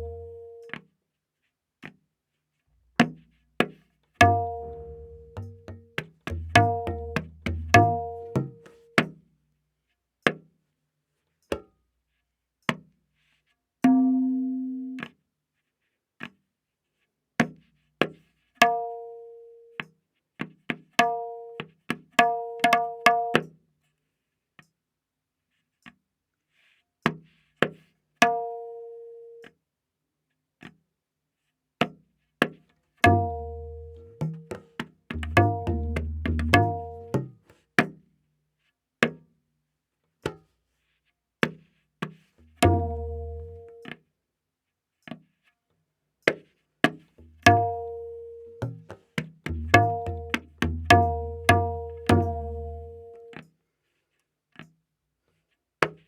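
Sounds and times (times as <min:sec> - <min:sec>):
tabla strokes: 0:00.0 - 0:00.8, 0:02.8 - 0:09.2, 0:12.6 - 0:15.1, 0:20.7 - 0:23.6, 0:32.4 - 0:38.0, 0:40.2 - 0:44.0, 0:46.3 - 0:53.5.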